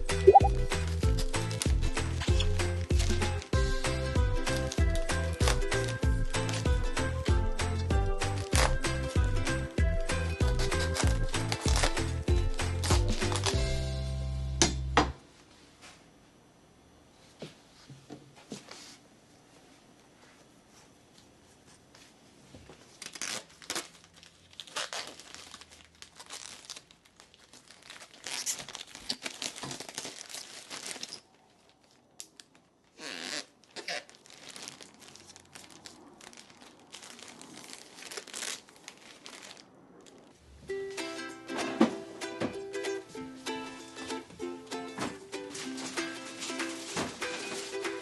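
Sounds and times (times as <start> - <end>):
packaging crinkling and tearing: 0.8 - 3.5, 4.5 - 6.7, 8.4 - 8.8, 10.4 - 13.6, 22.8 - 40.4, 45.5 - 48.0.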